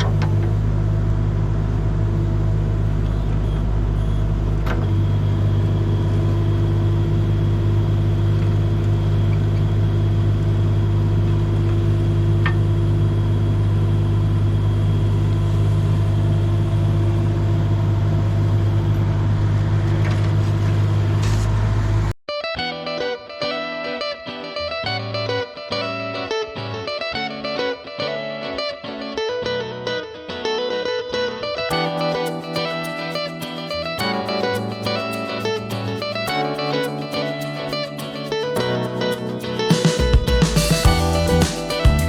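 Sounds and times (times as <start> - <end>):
engine idling with deep hum: 0.0 - 22.1, 40.9 - 42.0.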